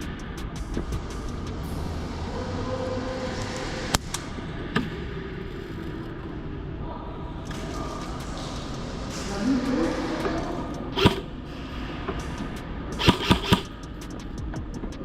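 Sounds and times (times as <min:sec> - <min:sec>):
steady background hum: 0:00.0 - 0:15.0
airsoft gun shots: 0:11.0 - 0:11.3, 0:13.0 - 0:13.7.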